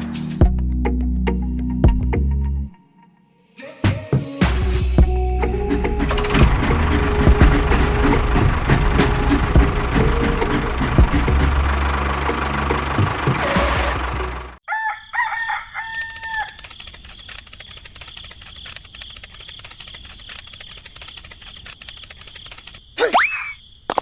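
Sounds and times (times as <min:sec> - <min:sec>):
regular ticking: 0:05.0 - 0:13.4, 0:16.5 - 0:23.0
small engine running: 0:05.2 - 0:14.6, 0:16.5 - 0:22.8
rooster crowing: 0:14.6 - 0:16.7.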